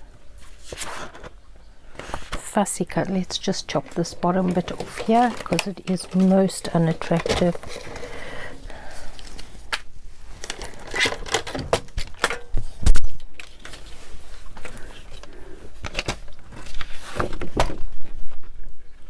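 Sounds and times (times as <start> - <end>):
paper snipping and crinkling: 0.4 - 17.8.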